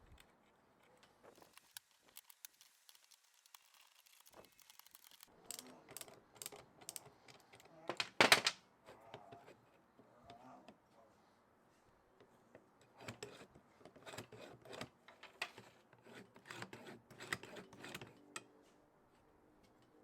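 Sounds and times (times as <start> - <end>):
small hard parts clicking: 1.3 - 8.6.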